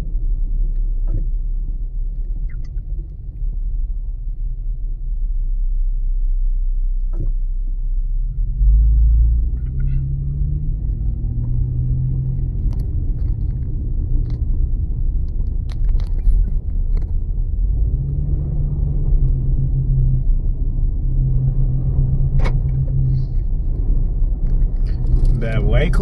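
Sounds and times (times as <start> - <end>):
road and engine rumble: 0.0 - 26.0
steady low drone: 0.0 - 26.0
small clicks and ticks: 12.3 - 14.5, 15.2 - 17.3.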